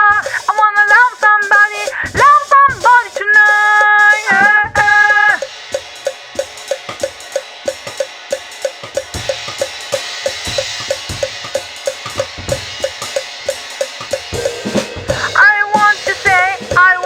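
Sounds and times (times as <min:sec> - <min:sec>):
drum kit playing: 0:00.0 - 0:17.0
cymbal wash: 0:05.4 - 0:17.0
jazz band held chord: 0:05.4 - 0:17.0.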